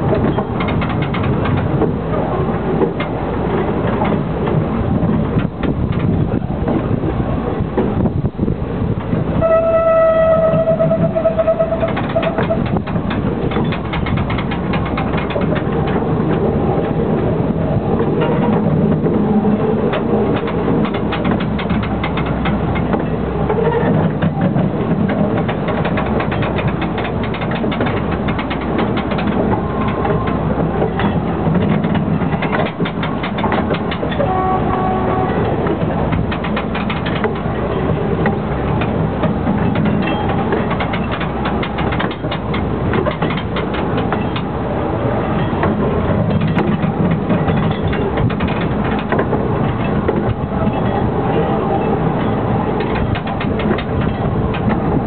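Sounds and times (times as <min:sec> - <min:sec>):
train wheels rattling: 0:00.0 - 0:55.0
train whistle: 0:09.4 - 0:12.7, 0:34.2 - 0:35.5.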